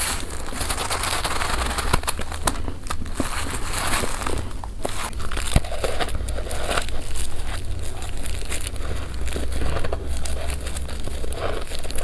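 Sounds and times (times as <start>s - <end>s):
chewing crunchy frost: 0.0s - 12.0s.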